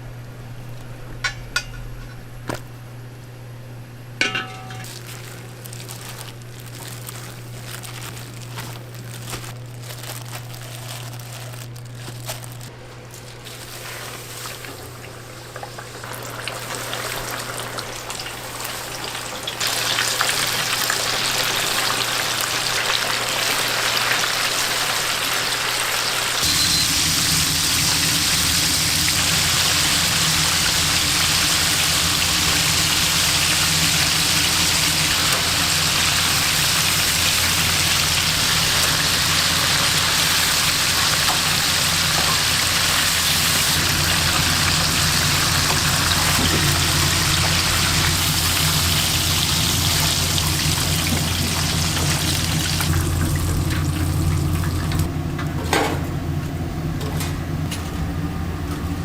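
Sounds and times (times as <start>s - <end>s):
food sizzling in oil: 15.7s - 54.6s
low hum: 26.4s - 59.0s.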